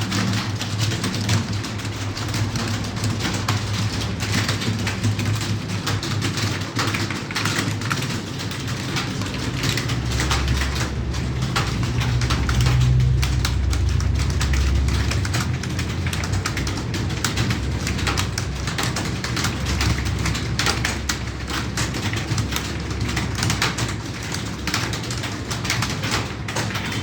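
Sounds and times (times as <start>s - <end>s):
keyboard typing: 0.0s - 27.0s
low steady hum: 9.8s - 21.1s.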